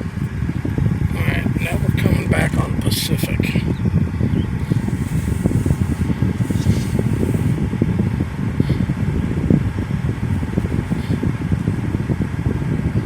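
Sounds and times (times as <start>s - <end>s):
blowing air rush: 0.0s - 13.0s
car engine and road noise: 2.8s - 13.0s.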